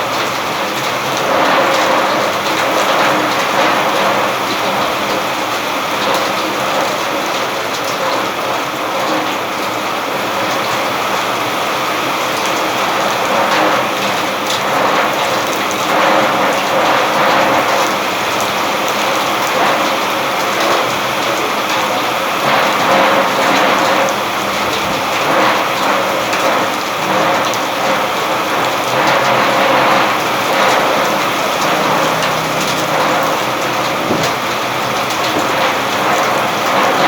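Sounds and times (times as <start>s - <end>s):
nearby raindrops: 0.0s - 37.0s
steady rain falling: 0.0s - 37.0s.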